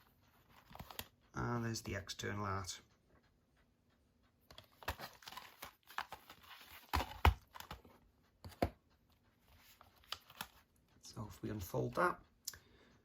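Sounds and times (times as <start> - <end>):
cardboard case rustling: 4.6 - 7.8.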